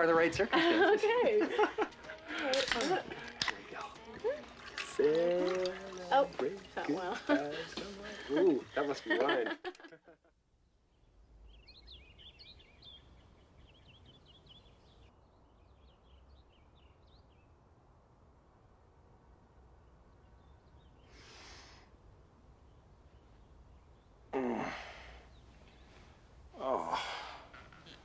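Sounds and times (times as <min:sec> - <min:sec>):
birds chirping: 0:00.0 - 0:09.8, 0:11.5 - 0:15.1, 0:22.7 - 0:28.0
short breathy hiss: 0:21.1 - 0:22.0
person sighing: 0:24.4 - 0:25.2, 0:26.6 - 0:27.5.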